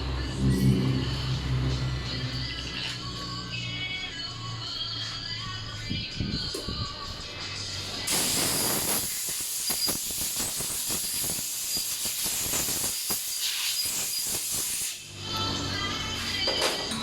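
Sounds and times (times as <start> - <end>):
compressed air hissing: 8.1 - 15.1.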